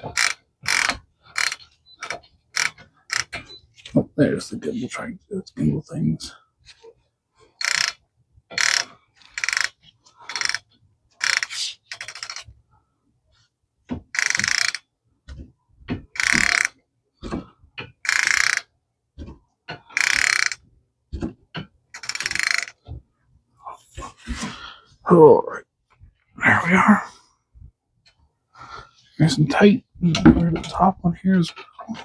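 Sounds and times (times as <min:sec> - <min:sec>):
socket ratchet clicking: 0:00.1 - 0:03.4, 0:07.6 - 0:12.4, 0:14.1 - 0:14.8, 0:16.1 - 0:16.8, 0:18.0 - 0:18.7, 0:20.0 - 0:20.6, 0:22.0 - 0:22.8.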